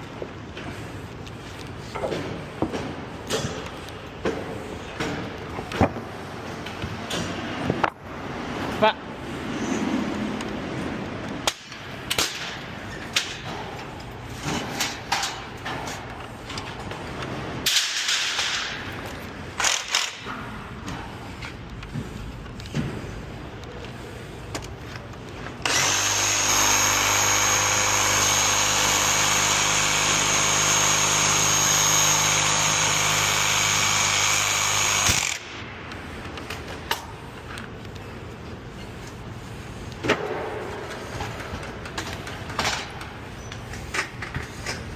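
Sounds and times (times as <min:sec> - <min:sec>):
power tool whining: 0:25.6 - 0:35.6.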